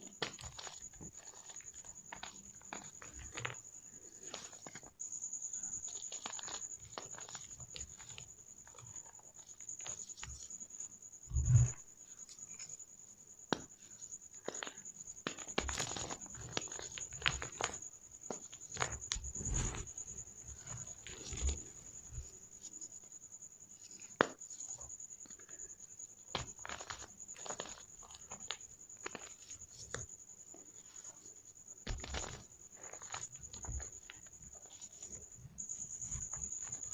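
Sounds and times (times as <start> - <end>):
chalk balls crunching: 0.2 - 3.6, 5.6 - 10.4, 13.5 - 19.8, 26.3 - 30.1.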